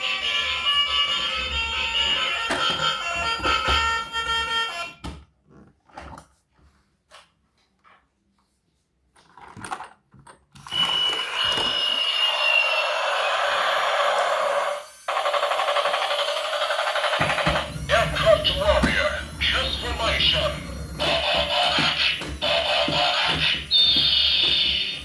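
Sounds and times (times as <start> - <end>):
toy siren alarm tone: 10.7 - 25.0.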